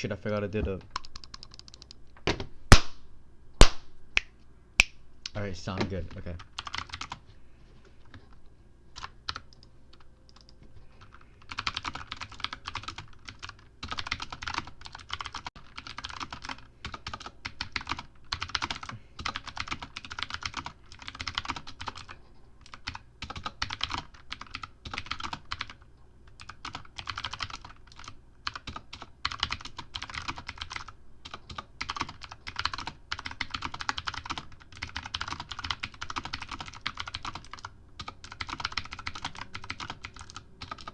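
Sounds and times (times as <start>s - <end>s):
fast typing on keyboard: 0.9s - 2.0s, 6.1s - 7.2s, 9.0s - 40.9s.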